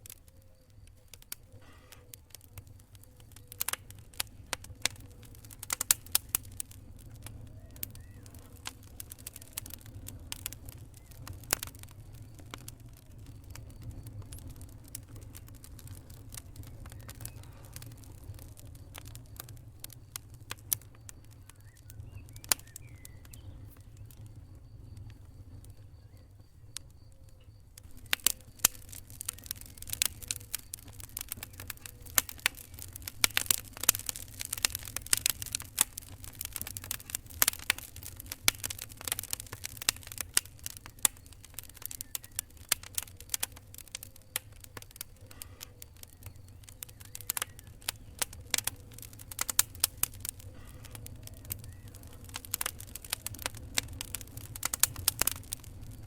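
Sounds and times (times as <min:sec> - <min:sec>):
fire crackling and popping: 0:00.0 - 0:56.0.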